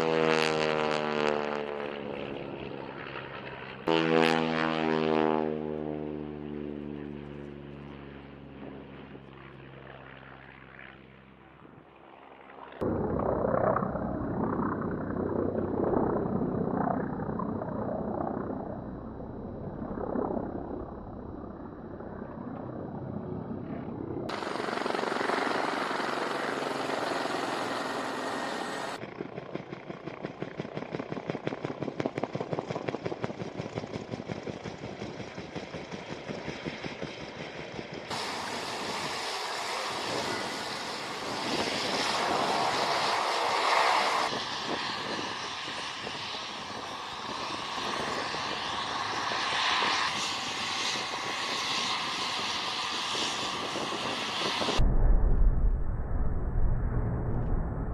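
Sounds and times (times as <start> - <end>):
military aircraft engine noise: 0.0 - 57.9.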